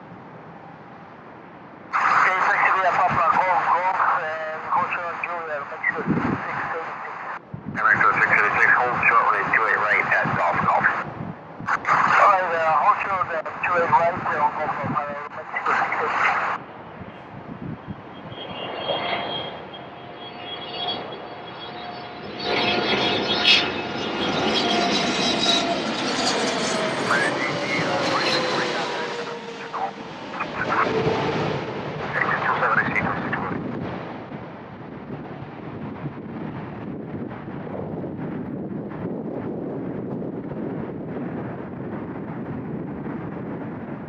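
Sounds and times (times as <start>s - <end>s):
jet engines whining: 1.2s - 44.0s
wind buffeting microphone: 5.8s - 15.8s, 16.5s - 19.9s, 26.4s - 44.0s.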